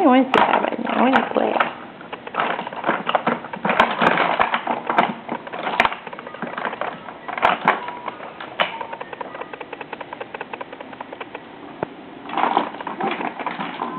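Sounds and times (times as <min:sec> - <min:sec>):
baby toys rattling and clicking: 0:00.0 - 0:11.5, 0:12.3 - 0:13.9.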